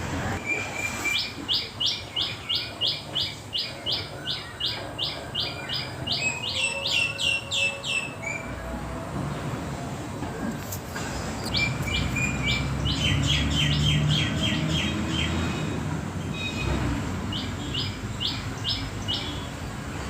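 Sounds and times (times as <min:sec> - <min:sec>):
bird chirping: 0:00.4 - 0:08.6, 0:11.4 - 0:15.5, 0:16.2 - 0:19.8
higher bird chirps: 0:00.4 - 0:08.7, 0:11.4 - 0:15.5.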